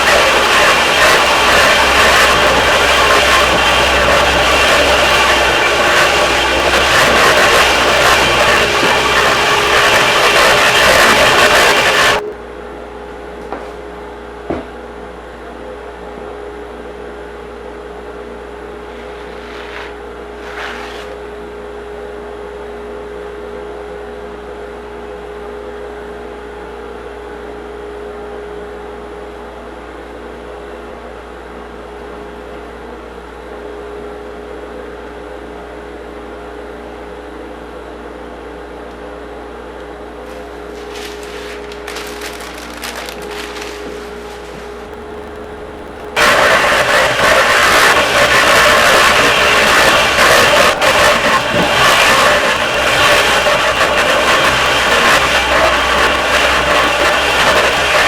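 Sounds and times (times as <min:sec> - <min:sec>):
orbit sander running: 0:00.0 - 0:12.2, 0:44.8 - 0:58.0.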